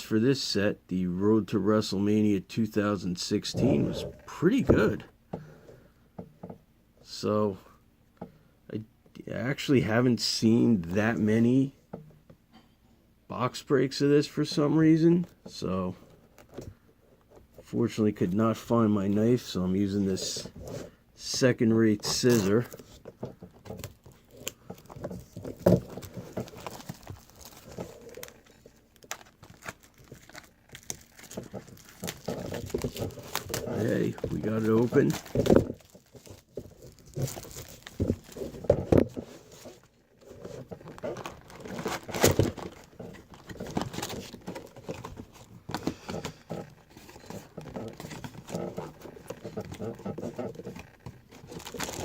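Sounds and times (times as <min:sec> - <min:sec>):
shrink wrap crinkling and tearing: 0:23.8 - 0:52.0.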